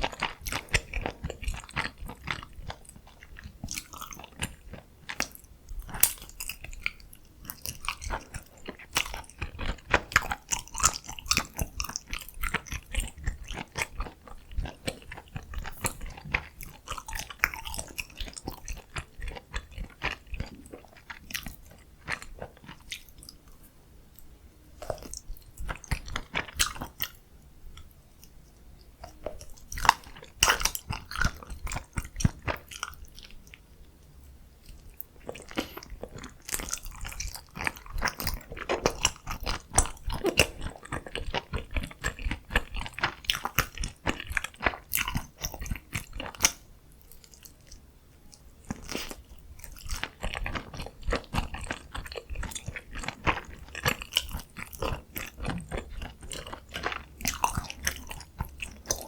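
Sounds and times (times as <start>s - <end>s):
close-miked chewing and biting: 0.0s - 23.6s, 24.8s - 33.6s, 34.6s - 59.0s
wet mouth clicks: 34.6s - 46.6s, 47.2s - 59.0s.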